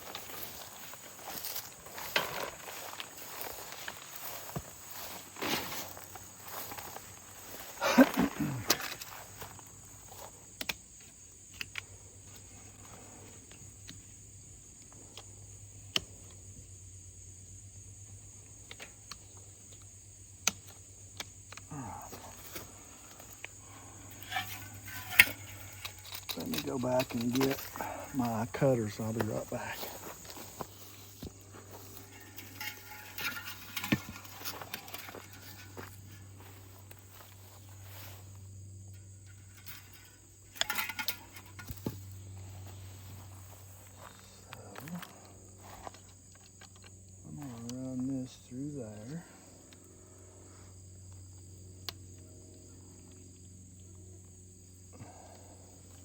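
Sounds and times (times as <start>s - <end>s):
insect chirring: 0.0s - 56.0s
wire clicks and handling noise: 22.5s - 27.8s, 29.2s - 37.2s, 39.0s - 42.1s.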